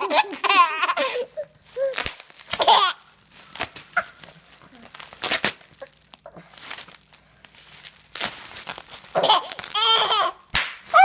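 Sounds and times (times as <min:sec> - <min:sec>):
baby laughing and babbling: 0:00.0 - 0:03.1, 0:09.1 - 0:11.0
bubble wrap crinkling: 0:00.0 - 0:11.0.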